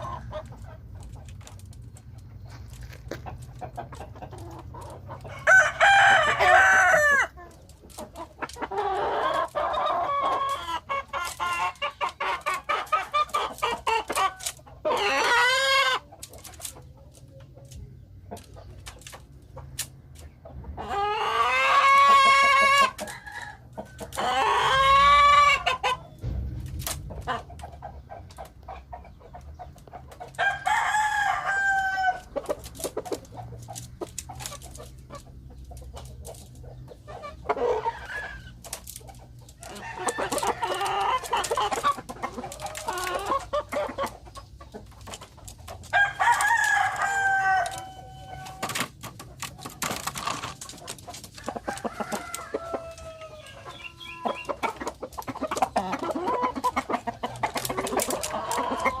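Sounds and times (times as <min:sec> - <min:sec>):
chickens clucking: 0:00.0 - 0:59.0
rooster crowing: 0:05.3 - 0:07.3, 0:30.4 - 0:32.2, 0:46.0 - 0:48.5, 0:51.6 - 0:54.4.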